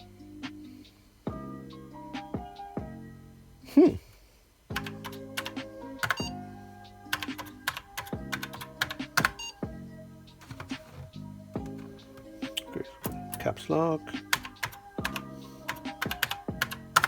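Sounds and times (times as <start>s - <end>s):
background music: 0.0s - 17.0s
keyboard keys clicking: 4.8s - 6.3s, 7.1s - 9.6s, 10.4s - 13.5s, 14.2s - 17.0s.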